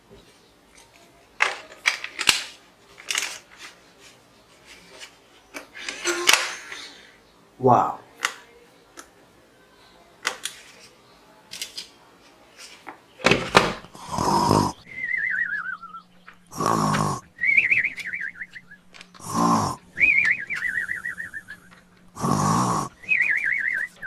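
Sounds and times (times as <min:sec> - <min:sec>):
warbling electronic whistle: 0:17.4 - 0:18.8.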